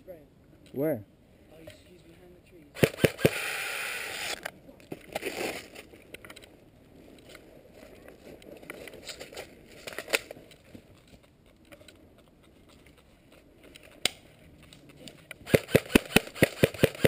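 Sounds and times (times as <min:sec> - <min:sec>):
airsoft gun shots: 0:02.8 - 0:04.3, 0:15.4 - 0:17.0.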